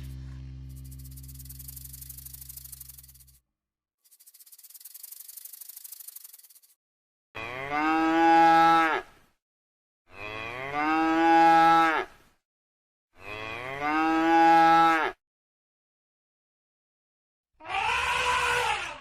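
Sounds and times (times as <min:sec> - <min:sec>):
cow mooing: 0:07.4 - 0:09.1, 0:10.1 - 0:12.1, 0:13.2 - 0:15.2.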